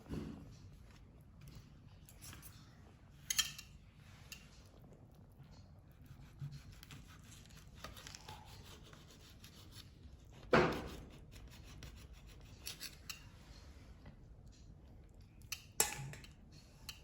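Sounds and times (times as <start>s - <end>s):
knife scraping and tapping: 10.4s - 13.3s.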